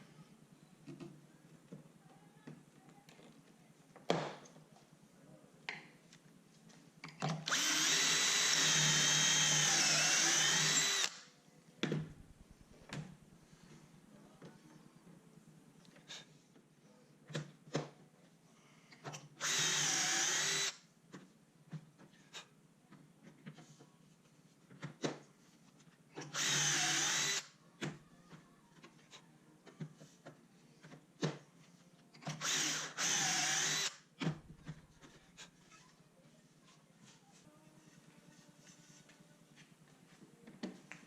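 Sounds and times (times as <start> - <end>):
power drill boring into wood: 7.5 - 11.3, 19.4 - 20.8, 26.2 - 27.5, 32.3 - 34.0.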